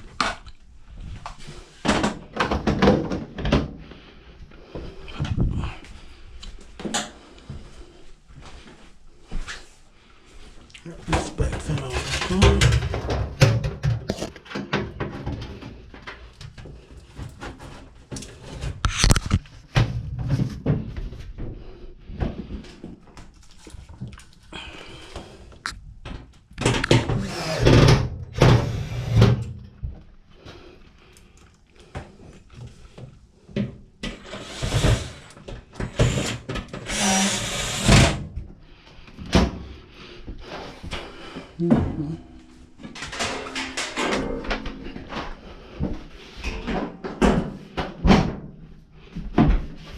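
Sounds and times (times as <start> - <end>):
scraping noises: 10.9 - 13.0.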